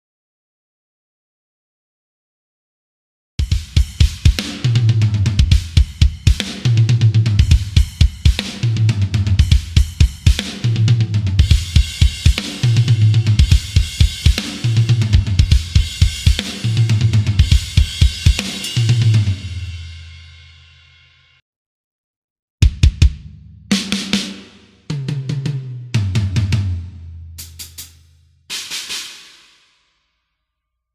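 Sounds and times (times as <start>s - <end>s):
kick drum: 3.4s - 4.5s, 5.4s - 6.5s, 7.4s - 8.5s, 9.4s - 10.5s, 11.4s - 12.4s, 13.4s - 14.4s, 15.1s - 16.4s, 17.4s - 18.4s, 22.6s - 23.3s
snare and hi-hat: 3.5s - 20.2s, 22.6s - 26.1s, 27.4s - 30.0s.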